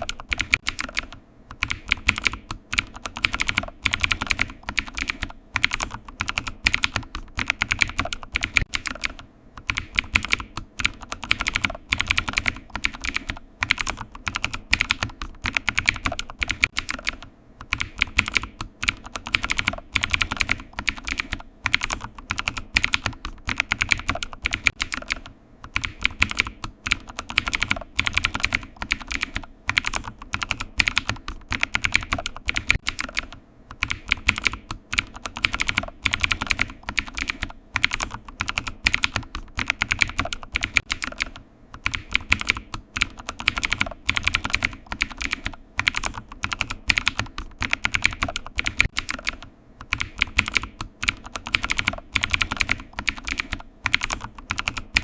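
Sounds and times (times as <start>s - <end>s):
computer keyboard typing: 0.0s - 55.0s.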